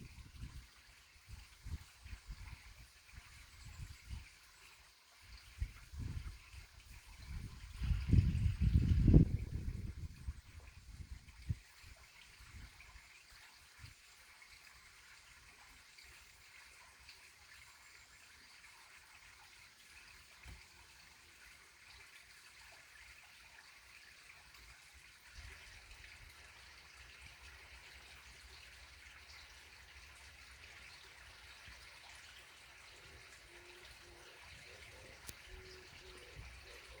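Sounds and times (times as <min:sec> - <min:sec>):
stream water trickling: 0:00.0 - 0:37.0.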